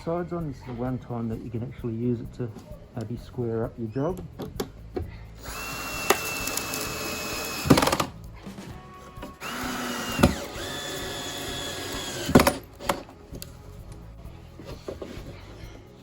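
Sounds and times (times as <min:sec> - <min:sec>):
background music: 0:00.0 - 0:16.0
cordless drill motor whine: 0:05.4 - 0:08.1, 0:09.3 - 0:12.6
drill clutch clicking: 0:05.4 - 0:08.1, 0:09.4 - 0:13.5.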